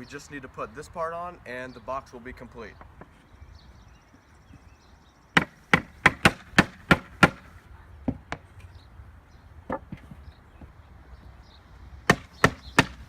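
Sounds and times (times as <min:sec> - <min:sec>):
rubber mallet pounding wood: 0:05.4 - 0:07.5, 0:12.1 - 0:13.0.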